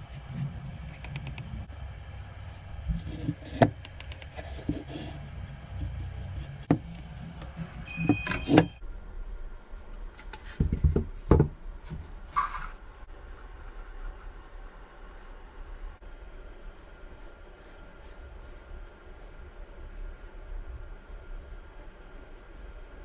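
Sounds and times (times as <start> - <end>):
short high-pitched squeak: 7.8 - 8.8.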